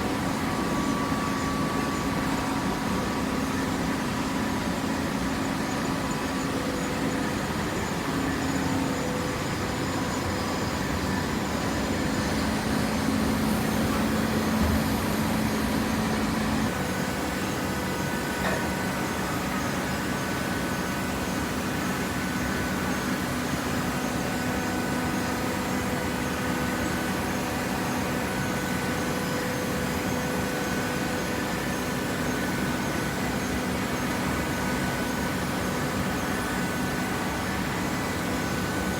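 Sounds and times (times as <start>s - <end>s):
higher machine whine: 4.8s - 21.1s
baler machine hum: 9.6s - 19.6s.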